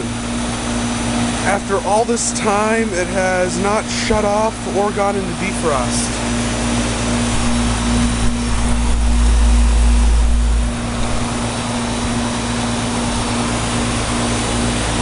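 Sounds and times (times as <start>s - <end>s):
compressor hum: 0.0s - 15.0s
fan rush: 0.0s - 15.0s
deep rumble: 7.1s - 13.4s.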